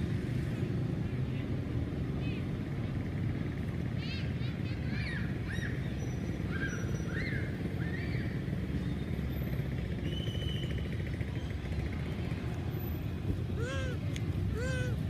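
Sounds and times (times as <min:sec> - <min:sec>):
young monkey crying: 0:13.5 - 0:15.0.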